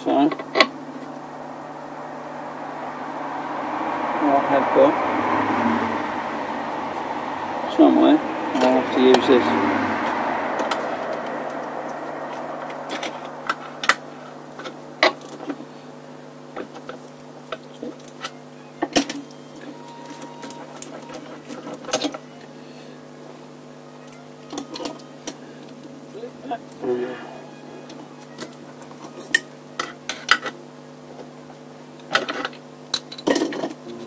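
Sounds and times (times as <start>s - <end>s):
steady low hum: 0.0s - 18.1s.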